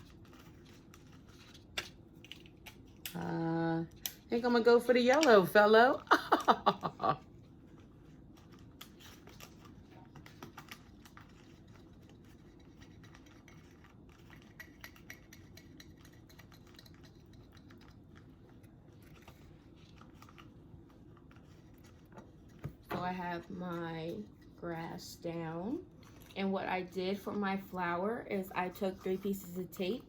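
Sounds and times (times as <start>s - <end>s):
low room hum: 0.0s - 30.0s.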